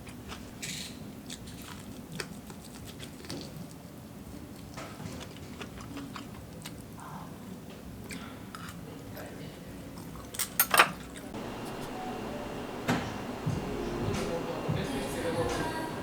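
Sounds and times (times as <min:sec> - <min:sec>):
steady hiss: 0:11.4 - 0:16.0.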